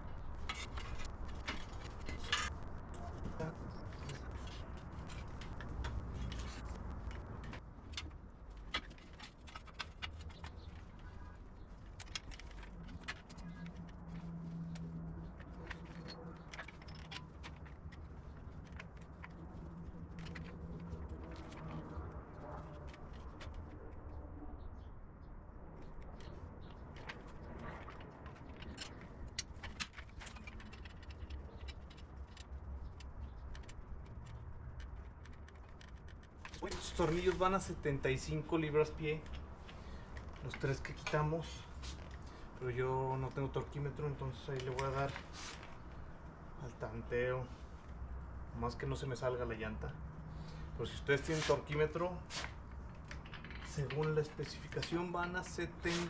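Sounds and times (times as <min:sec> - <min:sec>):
hand tools clinking and knocking: 0:00.2 - 0:11.0, 0:14.6 - 0:21.7, 0:51.2 - 0:56.0.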